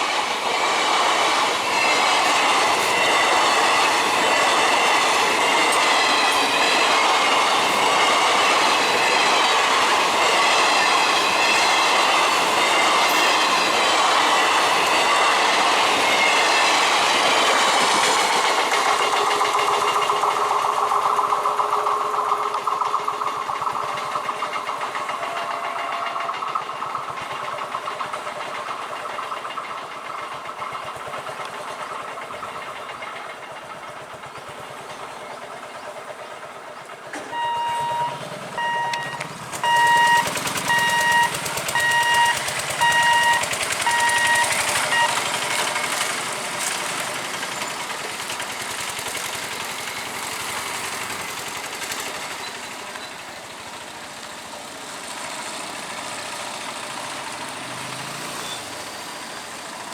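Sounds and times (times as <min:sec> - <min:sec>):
train running over rails: 0:00.0 - 0:59.9
repeating electronic beep: 0:37.4 - 0:45.2.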